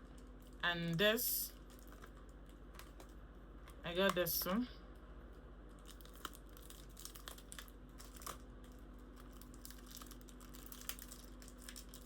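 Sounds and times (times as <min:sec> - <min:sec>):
steady low hum: 0:00.0 - 0:12.0
packaging being handled: 0:05.7 - 0:12.0.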